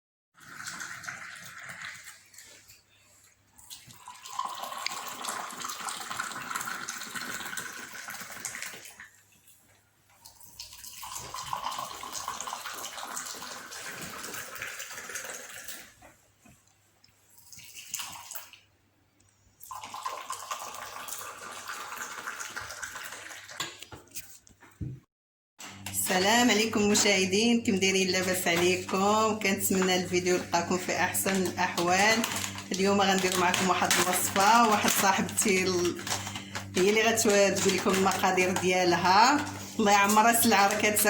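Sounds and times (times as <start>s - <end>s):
water running: 0.4s - 16.1s, 19.6s - 23.7s, 25.6s - 41.0s.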